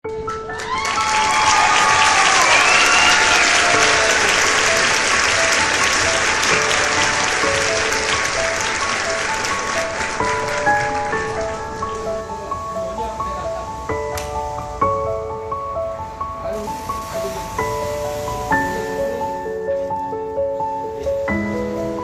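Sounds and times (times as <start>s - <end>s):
loud applause: 0.2s - 12.6s
music of held notes: 2.6s - 22.0s.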